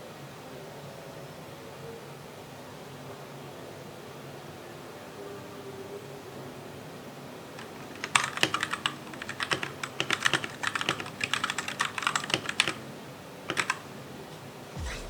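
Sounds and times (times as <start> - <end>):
mechanical keyboard typing: 7.6 - 12.9, 13.5 - 13.9.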